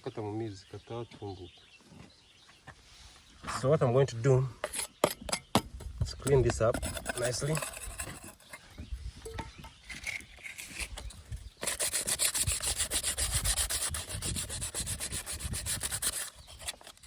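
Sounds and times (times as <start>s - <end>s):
hand sanding pipe: 11.6s - 17.0s.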